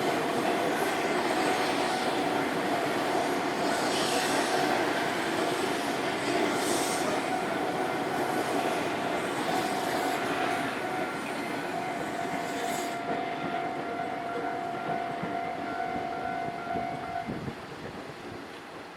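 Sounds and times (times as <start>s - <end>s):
train wheels on rails: 0.0s - 18.9s
steady high tone: 7.0s - 17.4s.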